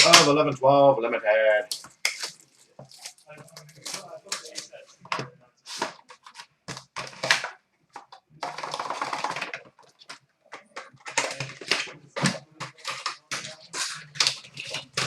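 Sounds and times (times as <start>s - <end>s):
card box packaging crackling: 5.7s - 15.0s
packaging rasping: 5.7s - 15.0s.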